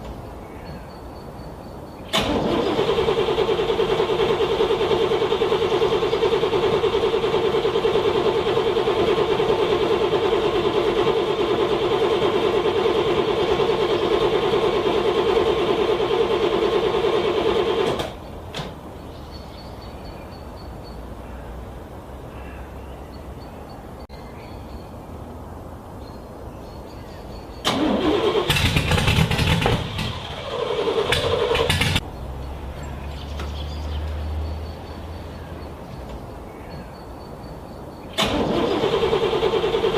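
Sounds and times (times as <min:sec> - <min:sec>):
car starter cranking engine: 0:02.1 - 0:18.2, 0:27.6 - 0:32.0, 0:38.1 - 0:39.9.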